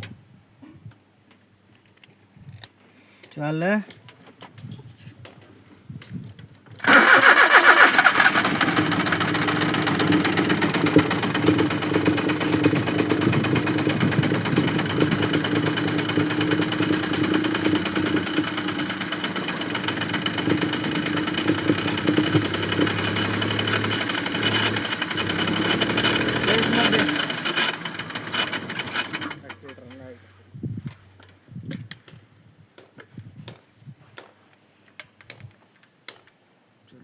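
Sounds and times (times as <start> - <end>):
car engine starting and running: 6.8 - 29.9.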